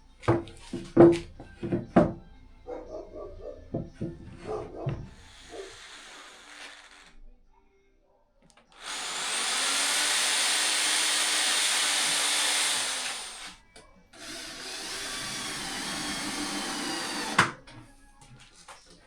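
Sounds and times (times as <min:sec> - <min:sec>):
table saw motor whining: 0:05.1 - 0:07.1, 0:08.8 - 0:13.5, 0:14.2 - 0:17.6.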